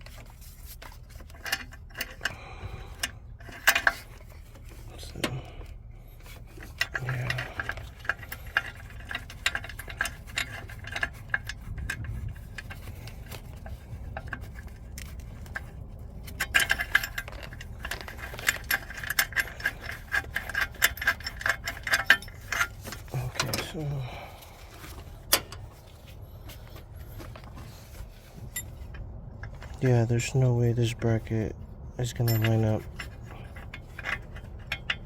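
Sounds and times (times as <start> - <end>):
small metallic clicks: 0.0 - 23.8, 32.0 - 35.0
metal parts and tools clinking: 0.0 - 35.0.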